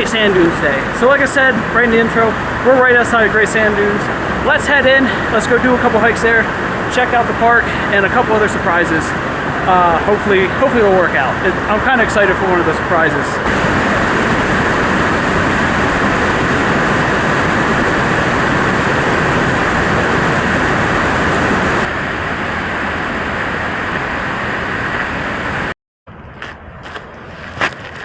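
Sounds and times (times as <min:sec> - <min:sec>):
car road and tyre noise: 0:00.0 - 0:28.0
crunching footsteps: 0:26.3 - 0:28.0.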